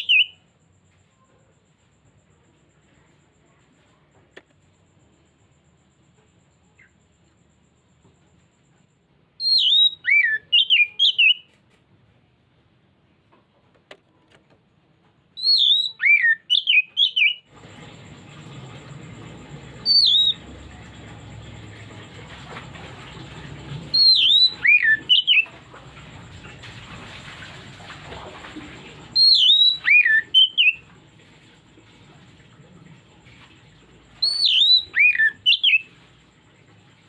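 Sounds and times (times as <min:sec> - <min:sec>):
bird singing whistled phrases: 0:00.0 - 0:00.4, 0:09.4 - 0:11.5, 0:15.4 - 0:17.5, 0:19.8 - 0:20.4, 0:23.9 - 0:25.5, 0:29.2 - 0:30.8, 0:34.2 - 0:35.9
background hiss and hum: 0:00.0 - 0:37.0.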